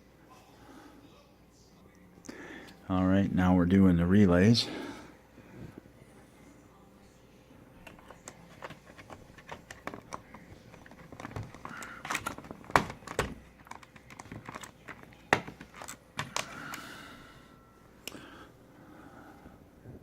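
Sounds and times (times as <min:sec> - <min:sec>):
plastic relays clicking and rattling: 0:07.8 - 0:16.9
sharp plastic snaps: 0:07.9 - 0:16.8.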